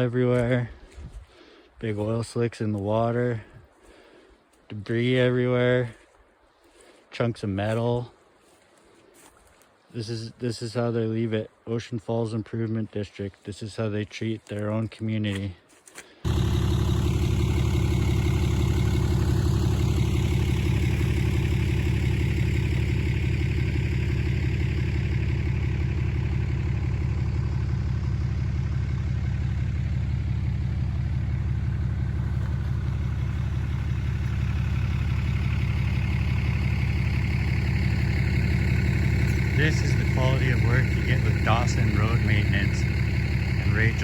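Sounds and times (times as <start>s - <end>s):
vehicle engine idling: 0.0s - 4.6s, 16.1s - 44.0s.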